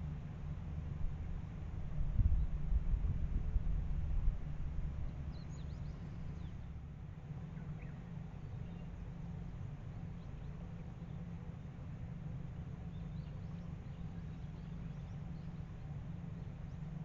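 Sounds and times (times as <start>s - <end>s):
wind rumble on microphone: 0.9s - 6.7s
small birds chirping: 5.1s - 6.7s, 7.4s - 11.3s, 12.6s - 16.9s.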